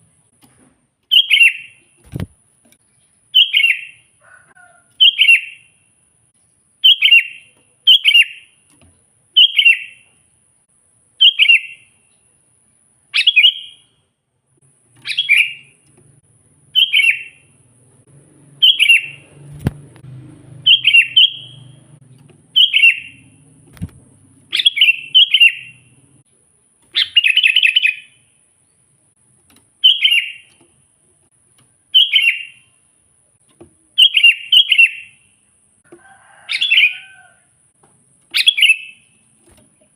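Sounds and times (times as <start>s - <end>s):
bulbul chirping: 1.1s - 2.3s, 13.1s - 14.0s, 15.0s - 15.8s, 16.7s - 17.6s, 18.6s - 19.8s, 20.5s - 26.0s, 26.9s - 28.3s, 29.8s - 30.6s, 31.9s - 32.8s, 33.9s - 35.3s, 38.3s - 39.2s.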